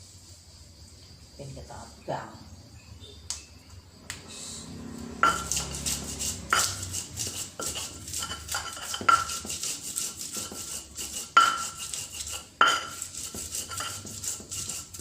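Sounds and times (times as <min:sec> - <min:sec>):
sharp ringing knocks: 0:05.2 - 0:05.6
pestle grinding in mortar: 0:05.2 - 0:15.0.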